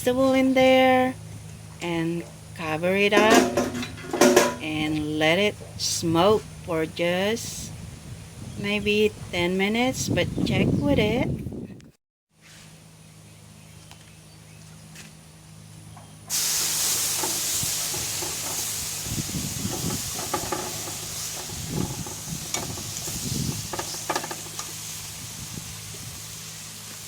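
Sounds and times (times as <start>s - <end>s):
food sizzling on a barbecue: 16.3s - 27.0s.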